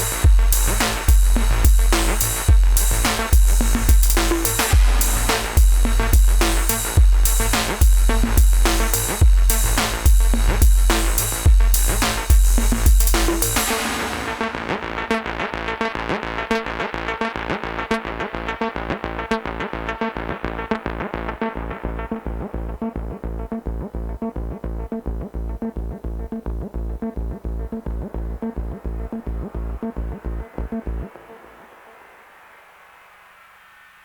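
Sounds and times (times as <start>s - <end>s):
heavy drum hits: 3.4s - 8.6s.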